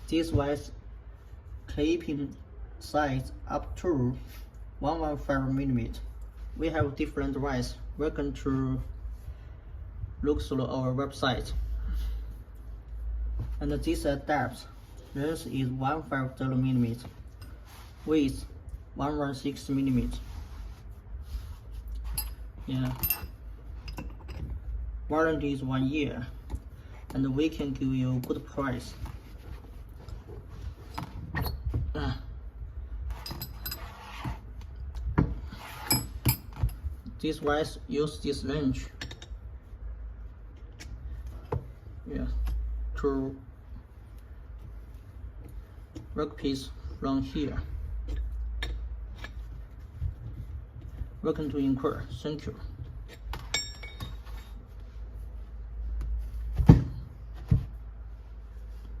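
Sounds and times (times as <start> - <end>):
low steady hum: 0.0 - 59.0
metal clinks and knocks: 22.0 - 24.7, 33.1 - 34.1, 35.8 - 37.0, 38.9 - 39.4, 52.9 - 54.6.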